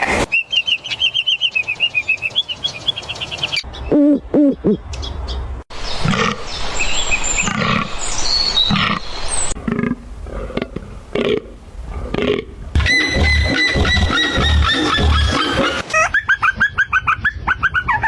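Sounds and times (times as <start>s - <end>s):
fast high animal trill: 12.8s - 16.3s.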